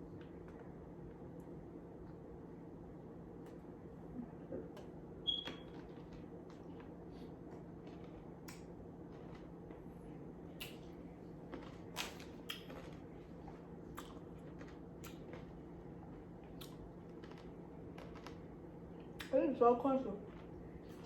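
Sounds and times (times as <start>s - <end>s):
crunchy chewing: 5.6s - 19.3s, 20.1s - 21.0s.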